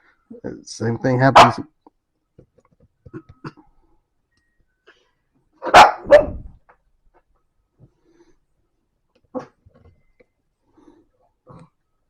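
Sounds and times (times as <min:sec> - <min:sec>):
dog barking: 0:01.3 - 0:01.7, 0:05.6 - 0:06.5.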